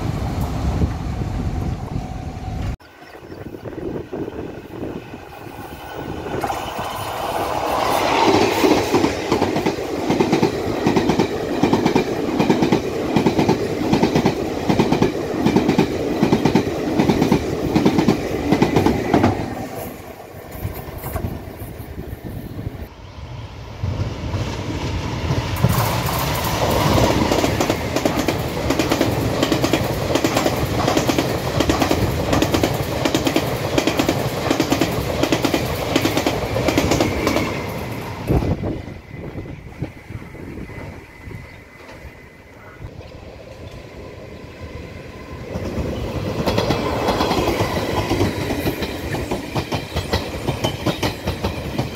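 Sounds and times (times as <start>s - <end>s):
train wheels clacking over rail joints: 25.6s - 38.5s, 45.4s - 51.9s.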